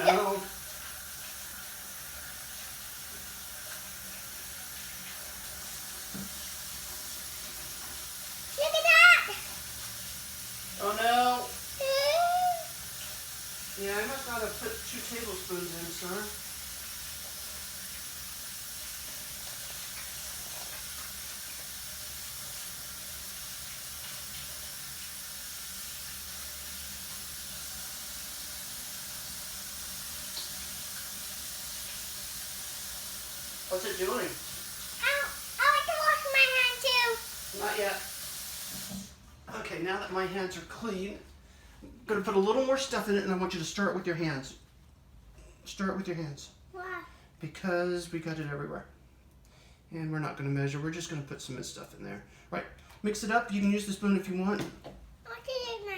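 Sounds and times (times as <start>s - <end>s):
tap water running into sink: 0.0s - 41.4s, 52.7s - 55.9s.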